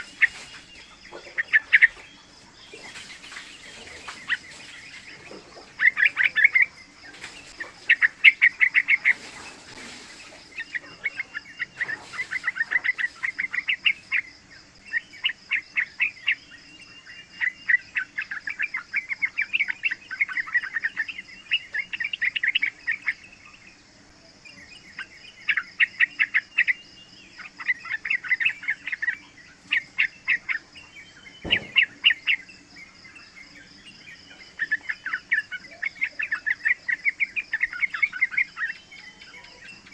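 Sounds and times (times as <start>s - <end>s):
bulbul chattering song: 0.0s - 39.9s
brief knock: 31.4s - 31.9s.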